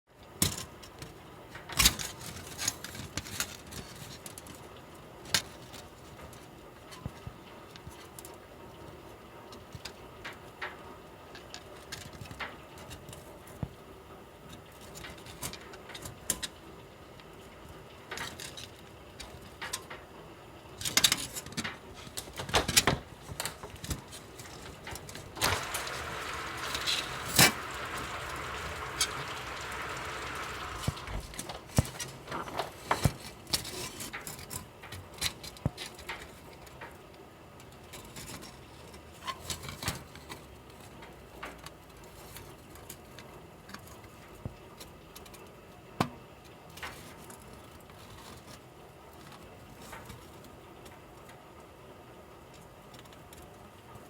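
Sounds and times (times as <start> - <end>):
raindrops tapping: 21.6 - 33.5
heavy rain hiss: 24.8 - 32.9.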